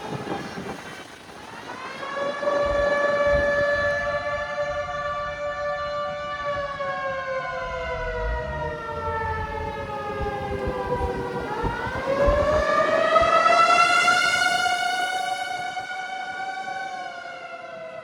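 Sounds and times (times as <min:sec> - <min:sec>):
warning siren wailing: 0:01.4 - 0:18.0
low vehicle rumble: 0:02.4 - 0:15.0.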